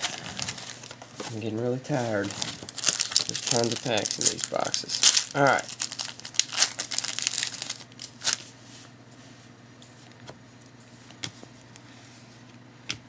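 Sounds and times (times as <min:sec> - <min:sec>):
foil wrapper crinkling: 0:00.0 - 0:01.2, 0:02.1 - 0:08.5.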